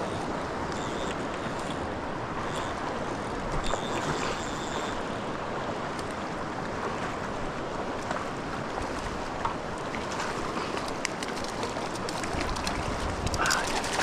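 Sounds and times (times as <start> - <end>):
creek water running: 0.0 - 14.0.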